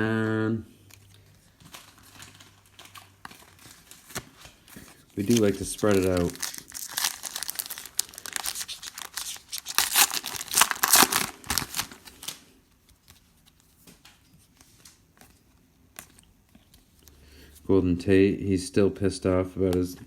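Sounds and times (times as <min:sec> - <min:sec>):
foil wrapper crinkling and tearing: 0:01.1 - 0:13.9
faint clicks of cards handled: 0:12.2 - 0:17.2.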